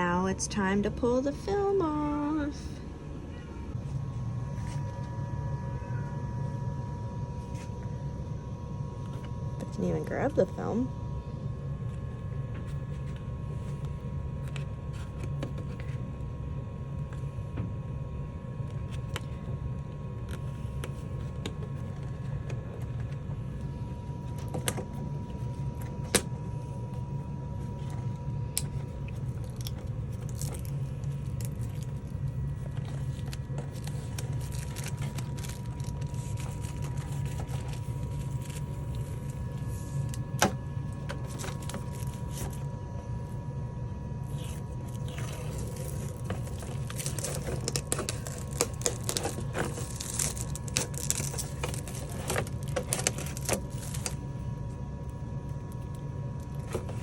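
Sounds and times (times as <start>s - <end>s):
low background hum: 0.0s - 57.0s
protective film peeling off plastic: 28.6s - 42.7s, 44.3s - 54.3s.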